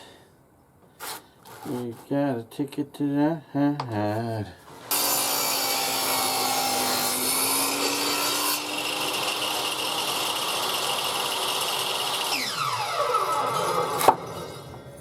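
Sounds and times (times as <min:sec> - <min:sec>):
table saw cutting wood: 0:04.8 - 0:14.6
saw blade spinning down: 0:11.7 - 0:14.7.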